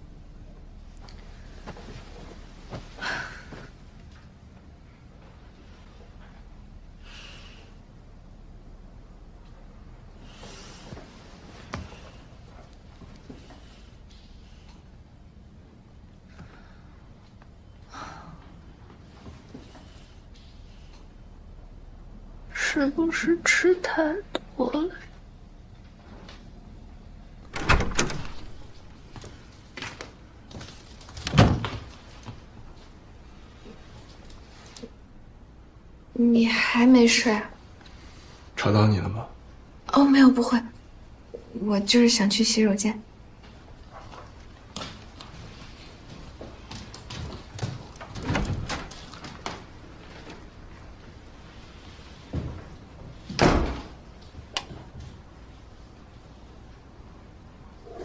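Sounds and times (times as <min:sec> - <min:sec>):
door clicks and knocks: 0:27.5 - 0:28.6
door shutting thud: 0:27.5 - 0:28.7, 0:53.3 - 0:54.0.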